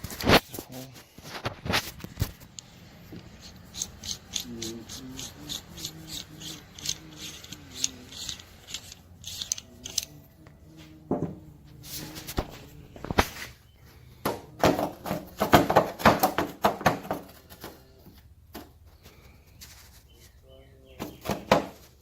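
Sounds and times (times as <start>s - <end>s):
file rasping on fiberglass: 3.2s - 10.0s
knocks: 14.2s - 17.4s.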